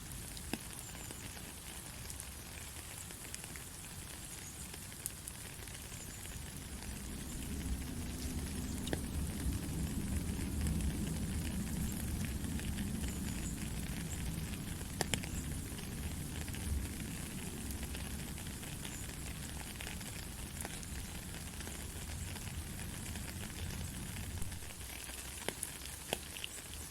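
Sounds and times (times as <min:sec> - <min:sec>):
steady rain patter: 0:00.0 - 0:26.9
single raindrops clicking: 0:04.7 - 0:15.8.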